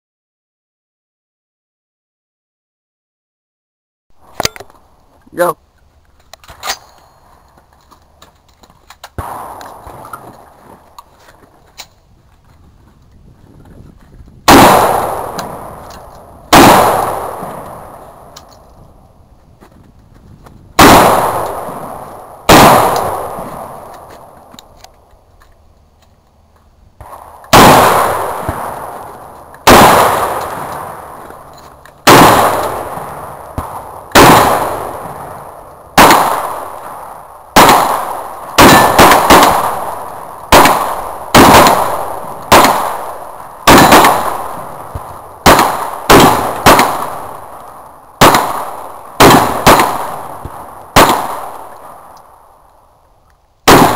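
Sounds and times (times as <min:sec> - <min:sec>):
gunshots echoing: 0:09.1 - 0:10.9, 0:14.5 - 0:18.7, 0:20.8 - 0:24.5, 0:27.0 - 0:52.2, 0:53.7 - 0:53.9.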